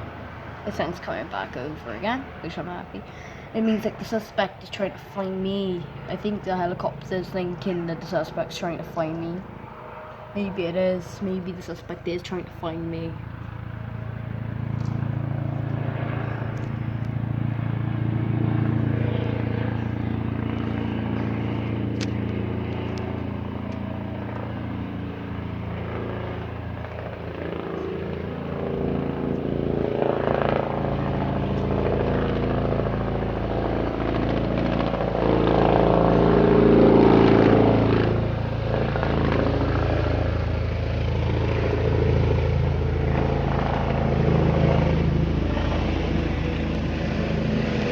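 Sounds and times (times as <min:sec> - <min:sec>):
helicopter rotor drone: 0:00.0 - 0:47.9.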